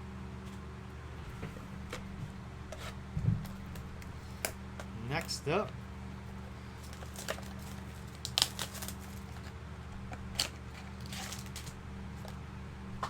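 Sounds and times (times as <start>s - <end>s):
steady low hum: 0.0s - 13.0s
cards crinkling and clicking: 6.8s - 12.4s.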